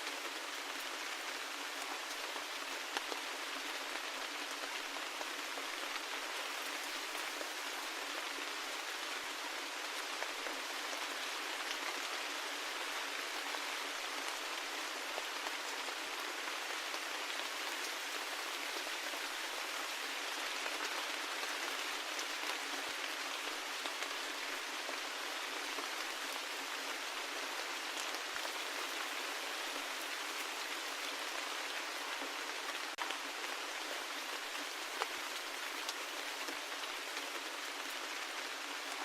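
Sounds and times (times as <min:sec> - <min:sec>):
steady rain hiss: 0:00.0 - 0:39.0.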